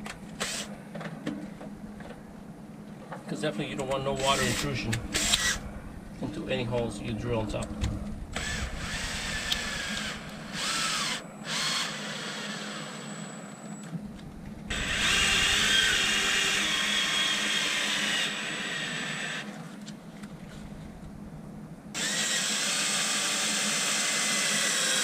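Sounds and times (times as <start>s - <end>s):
power drill whining: 0.4s - 0.7s, 4.2s - 5.7s, 8.3s - 13.9s, 14.7s - 19.6s, 22.0s - 25.0s.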